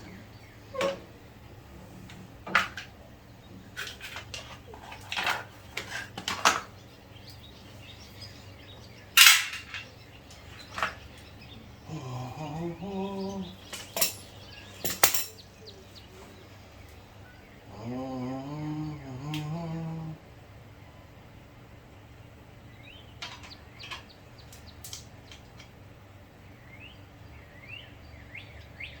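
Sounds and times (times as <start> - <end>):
metal tools clinking and knocking: 9.2 - 10.0, 13.6 - 15.5.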